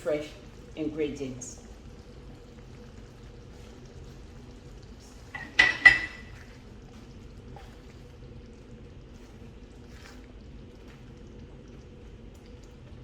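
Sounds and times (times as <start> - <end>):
faint steady hum: 0.0 - 13.0
metal utensil clinking on pot: 5.3 - 6.3.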